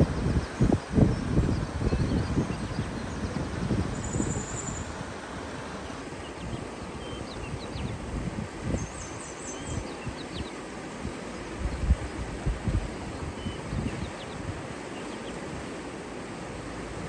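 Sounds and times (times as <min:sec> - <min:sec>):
small birds chirping: 0:00.0 - 0:05.1, 0:05.8 - 0:08.0, 0:08.7 - 0:10.7, 0:13.1 - 0:15.5
low gusty rumbles: 0:00.0 - 0:05.7.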